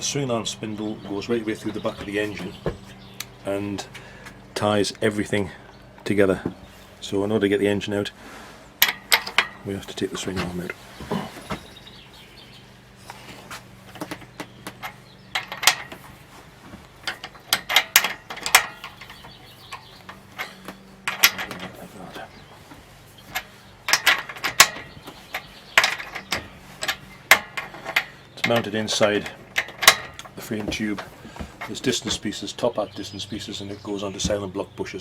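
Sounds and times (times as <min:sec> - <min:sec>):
metal tools clicking and clanking: 0:08.8 - 0:12.1, 0:13.7 - 0:34.4.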